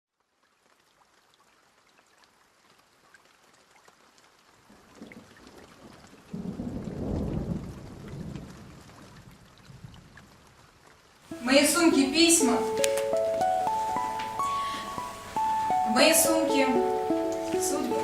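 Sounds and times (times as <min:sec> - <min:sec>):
rain falling: 0:00.1 - 0:18.0
deep roll of thunder: 0:06.3 - 0:10.1.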